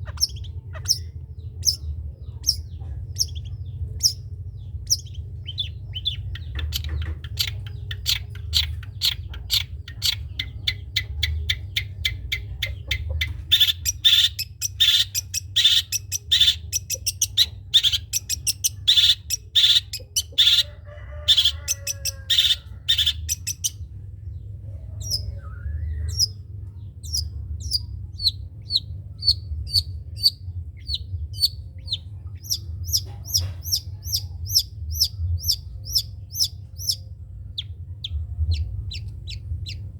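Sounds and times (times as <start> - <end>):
bird singing rapid notes: 0.0 - 20.7
low steady hum: 0.0 - 39.9.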